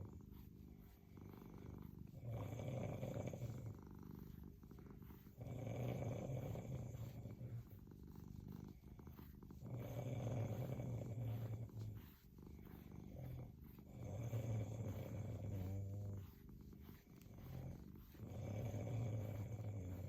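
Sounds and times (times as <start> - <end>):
cat purring: 0.0 - 20.0
person snoring: 18.3 - 20.0.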